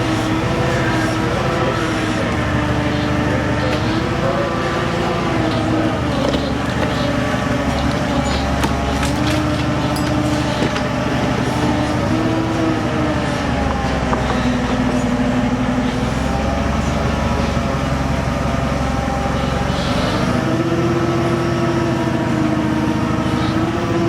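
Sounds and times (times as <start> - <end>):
mechanical hum with held tones: 0.0 - 24.0.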